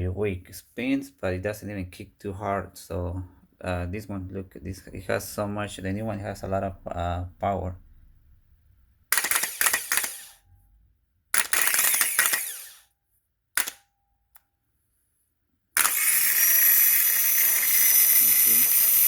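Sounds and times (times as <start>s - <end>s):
starter motor whining: 9.1s - 10.4s, 11.4s - 12.8s, 15.8s - 19.0s
starter click: 13.6s - 14.4s.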